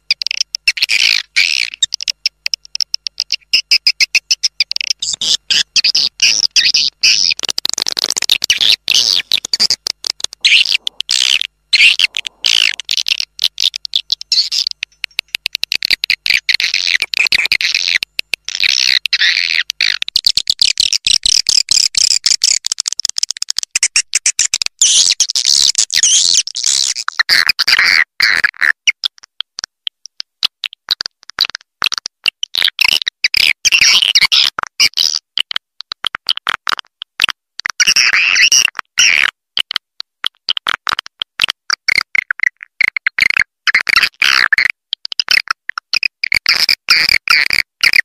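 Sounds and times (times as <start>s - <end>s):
swiftlet chirps and twitters: 0.1s - 22.6s.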